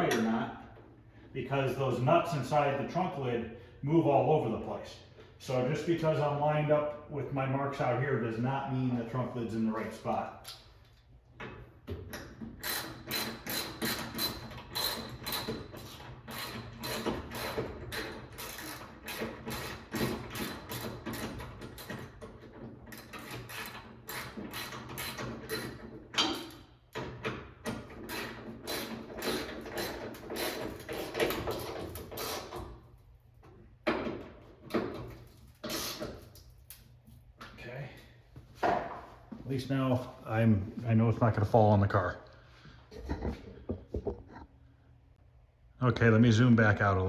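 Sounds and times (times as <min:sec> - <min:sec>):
hand ratchet clicking: 0:12.6 - 0:22.0, 0:27.7 - 0:32.6.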